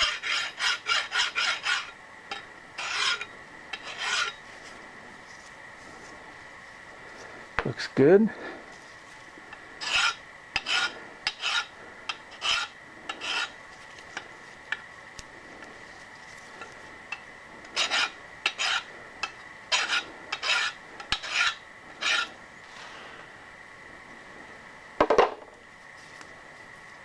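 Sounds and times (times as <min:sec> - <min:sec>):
hand file rasping on metal: 0:00.0 - 0:04.4, 0:09.8 - 0:13.6, 0:17.8 - 0:22.4.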